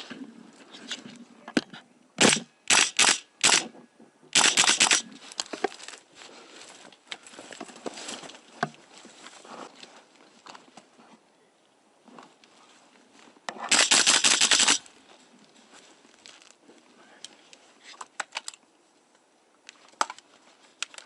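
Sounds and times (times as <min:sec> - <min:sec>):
airsoft rifle bursts: 0:02.2 - 0:03.7, 0:04.3 - 0:05.1, 0:13.7 - 0:14.9.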